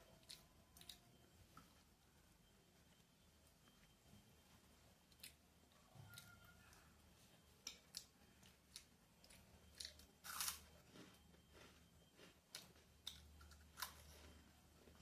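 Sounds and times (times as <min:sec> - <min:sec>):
chewing crispy food: 0:00.0 - 0:01.8, 0:05.0 - 0:15.0.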